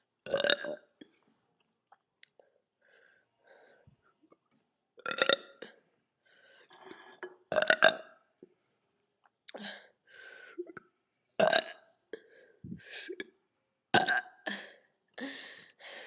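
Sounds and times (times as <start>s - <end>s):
woman burping: 10.6s - 11.8s, 14.0s - 14.6s.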